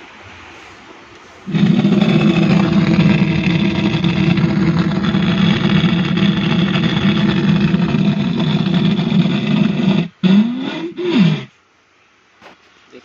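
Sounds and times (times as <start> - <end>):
speaker harsh rasping buzz: 1.5 - 11.6.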